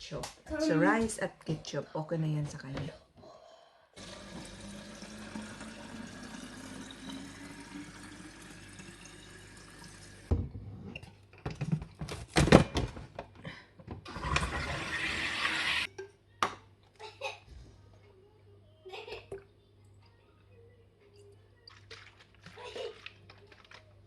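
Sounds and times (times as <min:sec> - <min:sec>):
water running: 0:04.0 - 0:10.3, 0:14.1 - 0:15.9.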